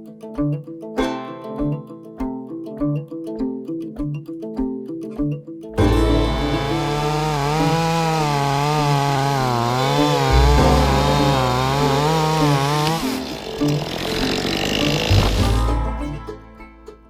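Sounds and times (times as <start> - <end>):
chainsaw cutting: 5.8 - 15.6.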